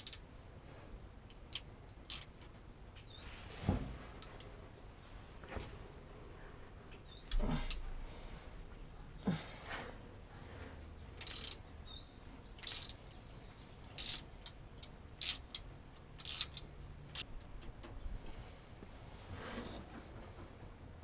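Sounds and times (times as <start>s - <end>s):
hand ratchet clicking: 0.0s - 0.2s, 1.3s - 2.3s, 11.2s - 11.7s, 12.6s - 13.1s, 13.9s - 17.3s.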